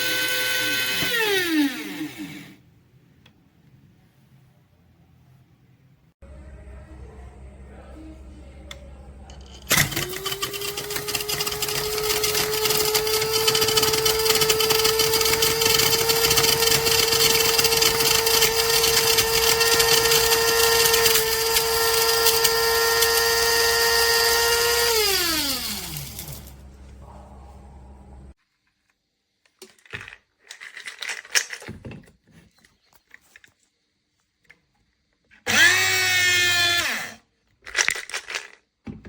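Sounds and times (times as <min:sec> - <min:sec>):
electric coffee grinder whining: 0:00.0 - 0:02.6, 0:09.7 - 0:26.6, 0:35.4 - 0:37.2.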